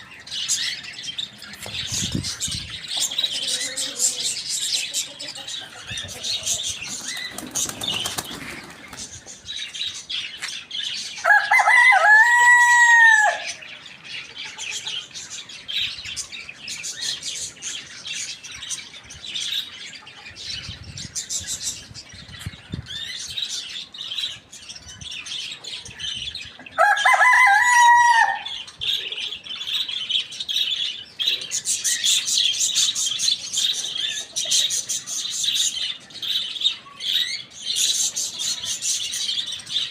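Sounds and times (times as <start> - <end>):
birds chirping and clucking: 0.0 - 39.9
rooster crowing: 11.2 - 13.6, 26.8 - 28.6.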